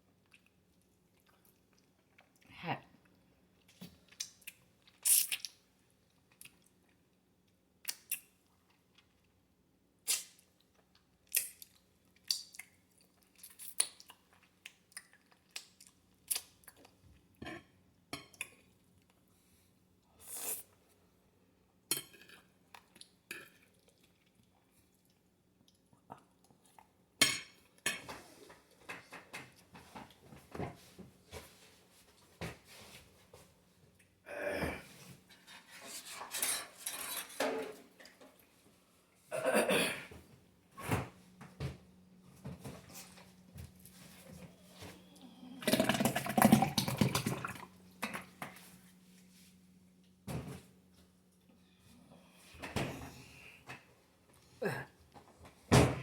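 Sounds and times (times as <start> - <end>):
chewing: 0.2 - 7.0, 10.7 - 17.0
utensil scraping a dish: 35.3 - 37.8.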